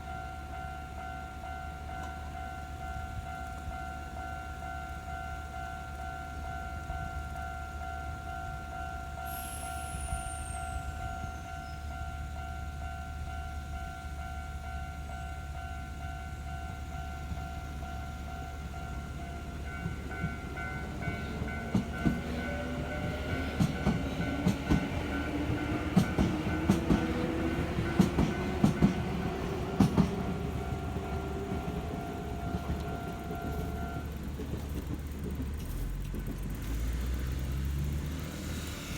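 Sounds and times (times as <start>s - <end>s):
level-crossing warning bell: 0.0s - 35.0s
train motor whine: 9.2s - 12.0s, 17.2s - 38.9s
train wheels clacking: 15.6s - 38.9s.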